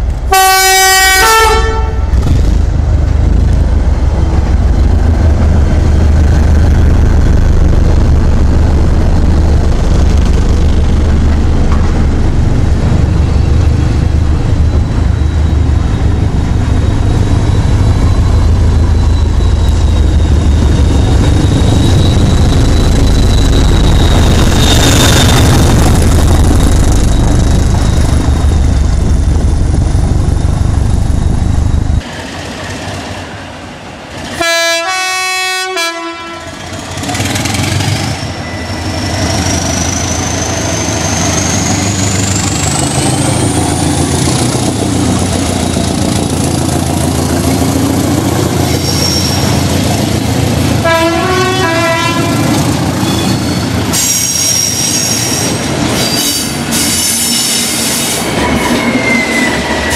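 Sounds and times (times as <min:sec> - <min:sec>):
train horn blast: 0:00.3 - 0:02.2, 0:34.4 - 0:36.6, 0:50.8 - 0:52.6
heavy low rumble: 0:02.1 - 0:32.0
train squealing past: 0:09.8 - 0:34.9, 0:35.8 - 0:59.9.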